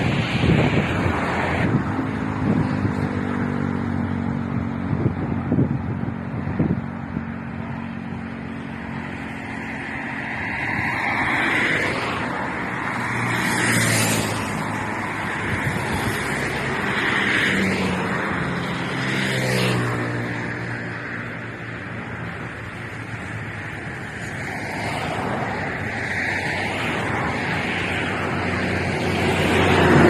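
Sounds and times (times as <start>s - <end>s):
vehicles passing by: 0.0s - 30.0s.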